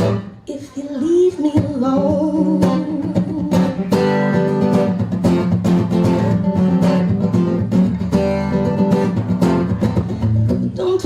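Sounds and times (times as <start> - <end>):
blues guitar strumming: 0.0 - 11.0
person singing: 0.4 - 4.5, 10.7 - 11.0.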